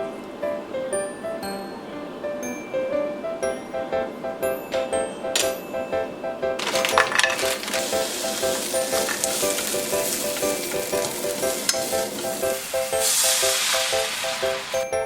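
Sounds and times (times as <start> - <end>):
light background music: 0.0 - 15.0
food sizzling in a frying pan: 6.6 - 15.0.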